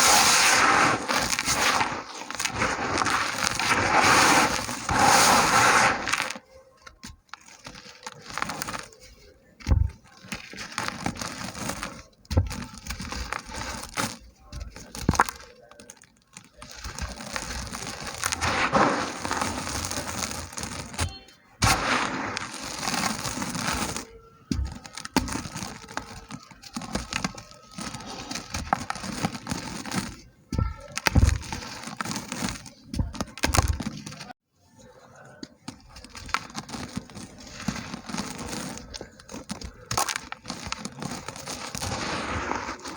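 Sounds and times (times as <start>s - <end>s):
dry dirt crumbling: 0.0s - 42.9s.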